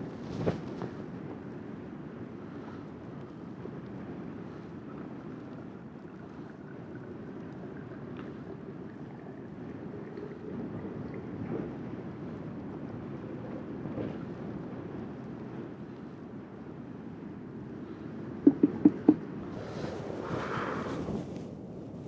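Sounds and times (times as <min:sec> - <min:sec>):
wind buffeting microphone: 0:18.5 - 0:22.0.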